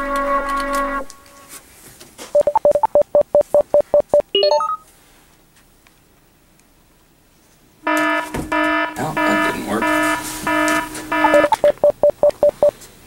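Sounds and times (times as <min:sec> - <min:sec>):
keypad dialing tones: 0:02.4 - 0:04.8, 0:09.2 - 0:12.8
short keypad beeps: 0:02.4 - 0:04.8, 0:09.2 - 0:12.7.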